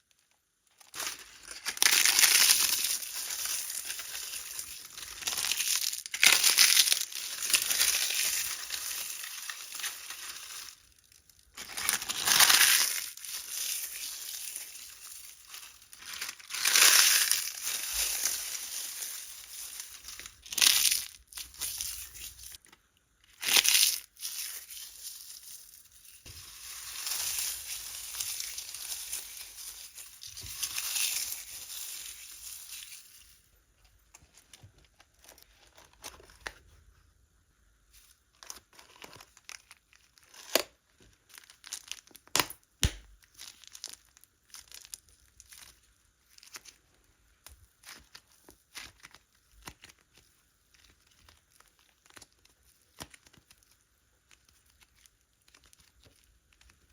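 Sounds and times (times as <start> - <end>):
plastic crinkling and rustling: 23.5 - 33.2, 43.3 - 56.9.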